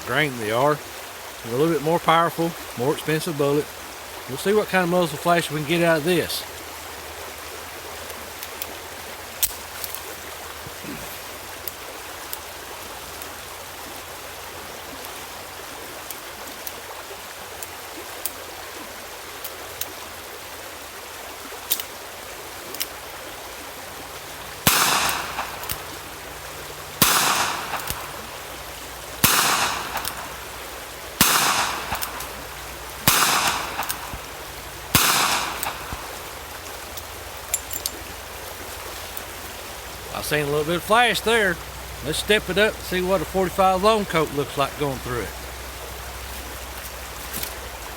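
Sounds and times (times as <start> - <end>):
background hiss: 0.0 - 47.9
faint clicks: 24.4 - 40.1
revolver shots echoing: 24.6 - 36.6.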